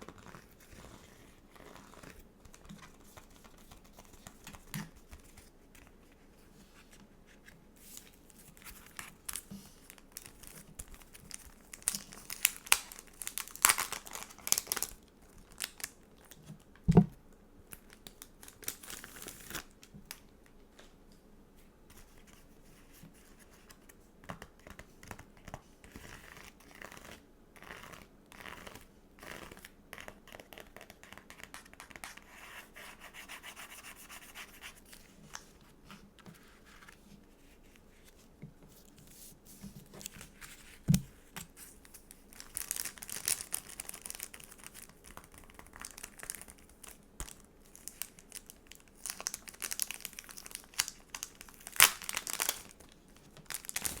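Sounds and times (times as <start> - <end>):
sticker sheets crinkling and peeling: 8.0 - 15.9, 39.6 - 54.0.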